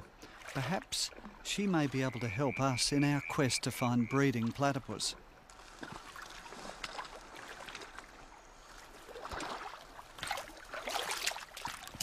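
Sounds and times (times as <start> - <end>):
water splashing and trickling: 0.0 - 12.0.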